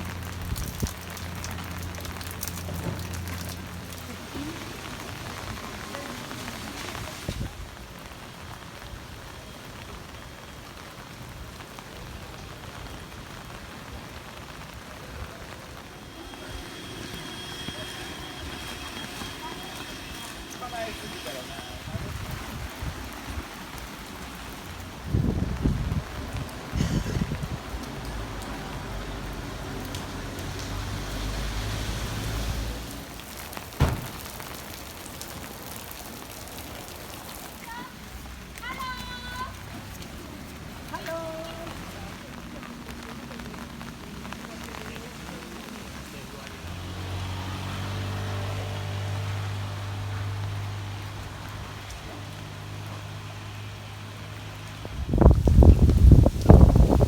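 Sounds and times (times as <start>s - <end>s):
steady rain falling: 0.0s - 57.0s
sharp knock: 33.8s - 34.2s.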